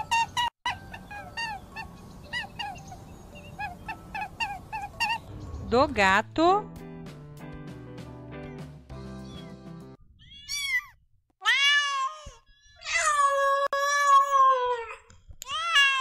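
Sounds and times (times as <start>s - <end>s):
background music: 0.7s - 10.0s
cat meowing: 10.2s - 14.5s.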